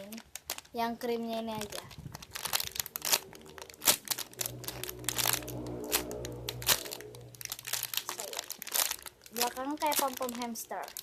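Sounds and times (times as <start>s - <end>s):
plastic crinkling: 0.0s - 11.0s
background music with low notes: 2.3s - 10.0s.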